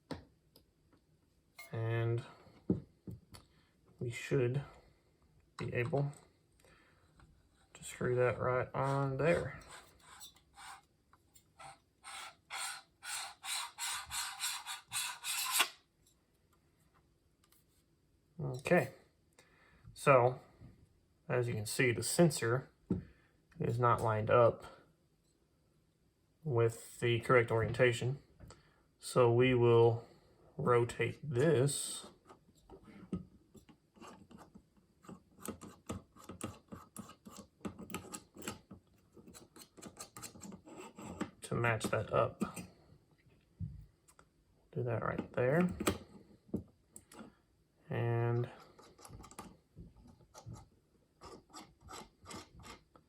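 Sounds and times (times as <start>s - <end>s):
threads scraping as turned by hand: 8.8s - 15.8s, 34.0s - 42.0s, 48.6s - 53.0s.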